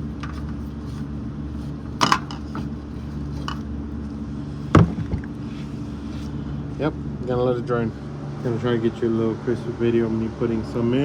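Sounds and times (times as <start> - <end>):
electric fan humming: 0.0 - 11.0
loud knock: 4.7 - 5.3.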